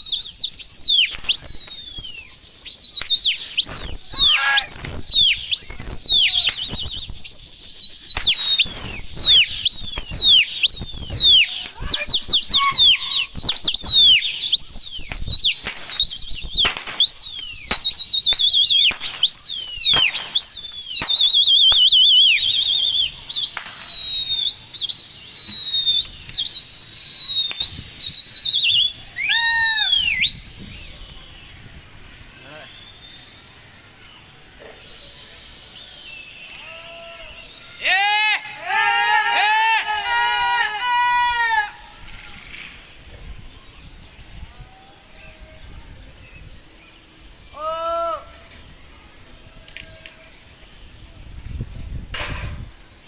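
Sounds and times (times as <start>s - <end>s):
shrill human whistling: 0.0s - 31.3s
sharp clicks: 14.6s - 21.9s.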